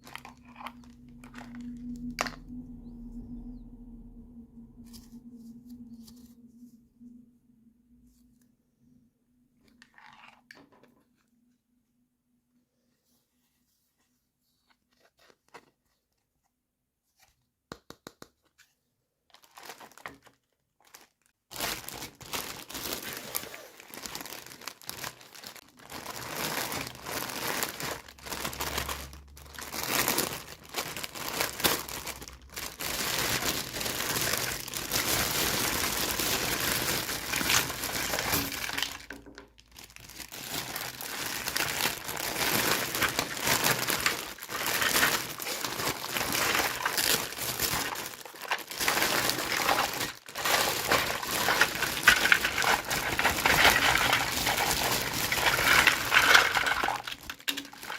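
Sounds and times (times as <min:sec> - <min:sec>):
packaging crinkling and tearing: 0:00.0 - 0:02.4, 0:19.3 - 0:57.9.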